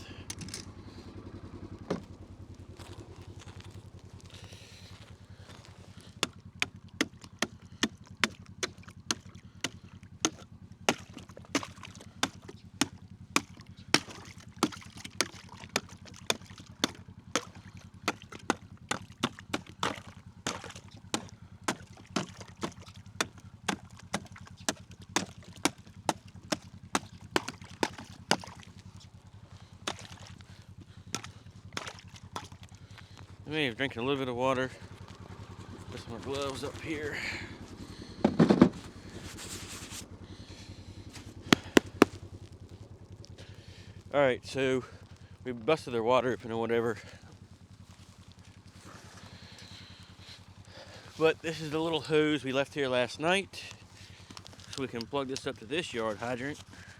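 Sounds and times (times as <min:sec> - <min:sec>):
hand tool striking ice: 0:06.0 - 0:28.8, 0:29.8 - 0:30.4, 0:31.1 - 0:32.6, 0:41.2 - 0:42.2.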